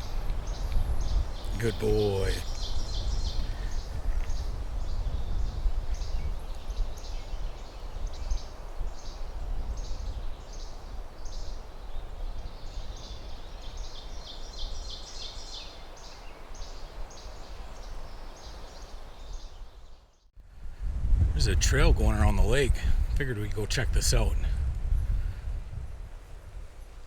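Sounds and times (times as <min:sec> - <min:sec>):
bird chirping: 0:00.0 - 0:20.4
wind buffeting microphone: 0:00.0 - 0:27.0.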